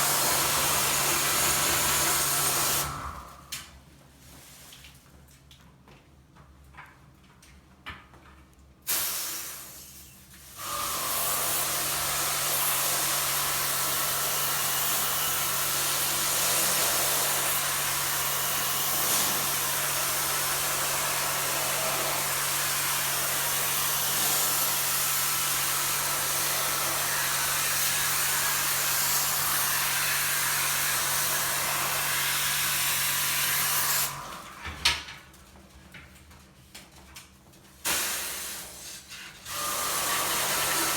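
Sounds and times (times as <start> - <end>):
pump motor hum: 0.0 - 3.5, 10.6 - 34.6
pressure washer spraying hiss: 8.9 - 10.1, 37.9 - 38.9.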